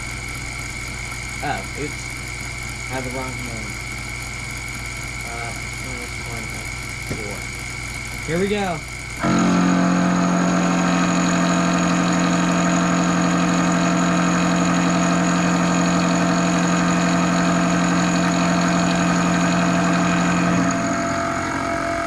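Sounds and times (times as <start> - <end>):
spindle motor: 0.0 - 22.0
mill cutting steel: 5.2 - 22.0.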